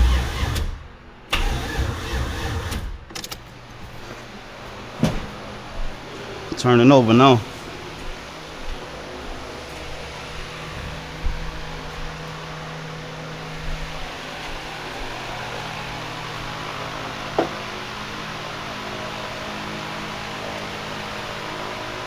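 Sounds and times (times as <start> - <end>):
engine turning over: 0.0 - 3.4
mechanical hum and hiss: 0.0 - 22.0.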